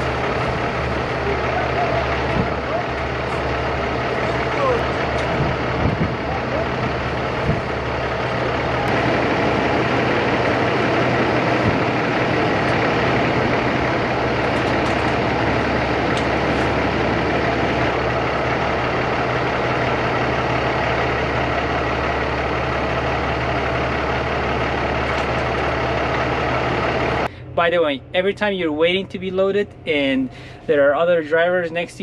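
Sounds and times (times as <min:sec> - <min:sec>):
even rushing noise: 0:00.0 - 0:20.5
diesel truck engine idling: 0:00.0 - 0:32.0.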